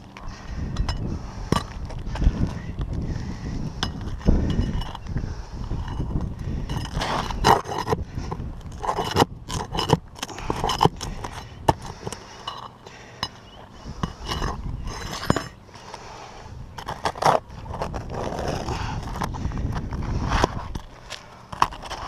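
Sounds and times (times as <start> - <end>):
pry bar scraping under shingles: 0.0 - 22.0
metallic clinks: 12.2 - 15.6.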